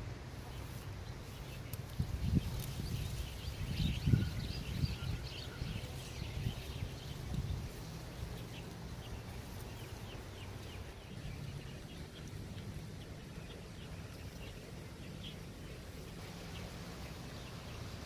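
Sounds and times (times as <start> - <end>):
small bird chirping: 0.4 - 18.0
wind on microphone: 1.8 - 13.4.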